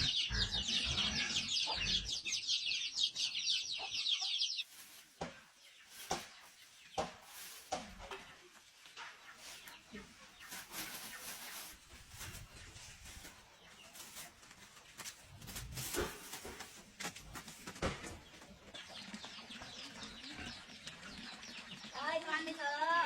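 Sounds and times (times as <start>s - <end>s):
chickens clucking: 0.0s - 21.8s.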